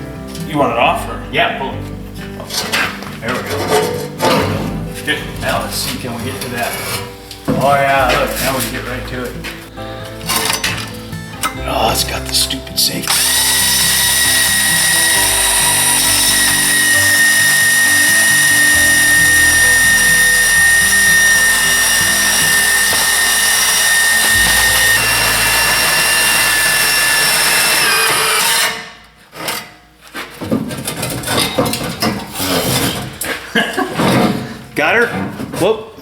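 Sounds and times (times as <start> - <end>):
metal clanks and handling noises: 1.9 - 11.6, 29.3 - 35.7
power tool motor whining: 13.0 - 29.0.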